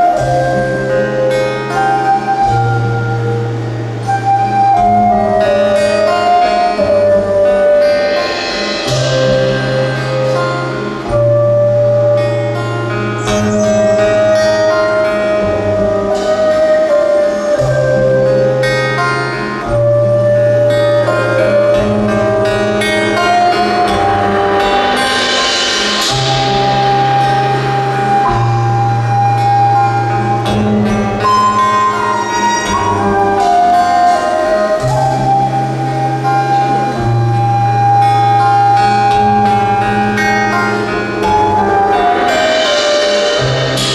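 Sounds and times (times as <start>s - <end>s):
plucked strings: 0.0s - 43.9s
sustained melody line: 0.0s - 43.9s
bright struck stroke: 8.0s - 11.2s, 12.6s - 15.8s, 22.0s - 28.9s, 39.6s - 43.9s.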